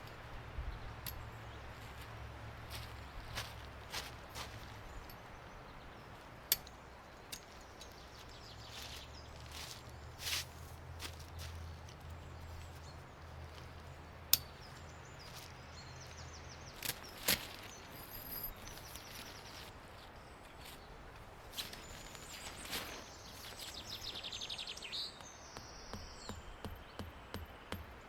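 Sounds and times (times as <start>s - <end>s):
bird singing a rapid trill: 6.8s - 9.8s, 21.7s - 27.5s.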